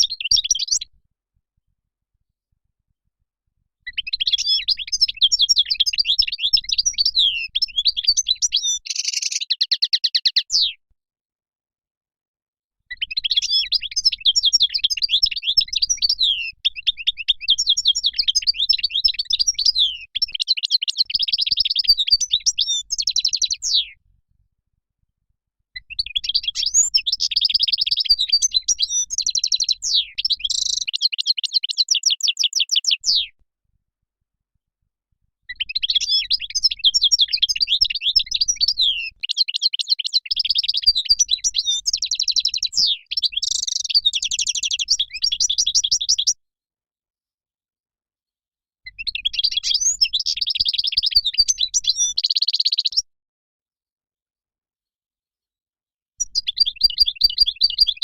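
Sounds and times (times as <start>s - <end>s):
goldfinch twittering song: 0.0s - 0.9s, 3.9s - 10.7s, 12.9s - 23.9s, 25.8s - 33.2s, 35.5s - 46.4s, 48.9s - 53.0s, 56.2s - 58.0s.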